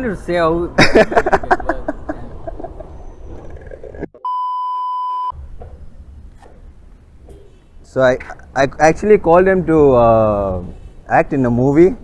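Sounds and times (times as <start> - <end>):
censor bleep: 4.2 - 5.4.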